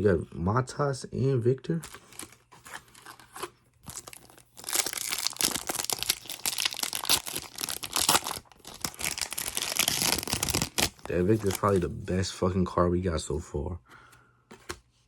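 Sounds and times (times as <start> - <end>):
wrapper crinkling and tearing: 1.9 - 11.8.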